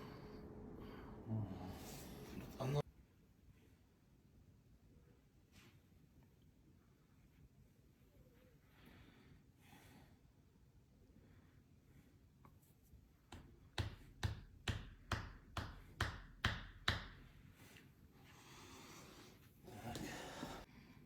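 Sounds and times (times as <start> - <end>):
breathy rush of noise: 0.0 - 2.6.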